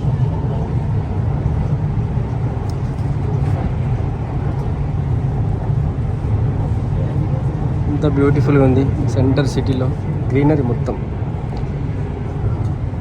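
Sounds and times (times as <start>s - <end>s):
metro train rumbling: 0.0s - 13.0s.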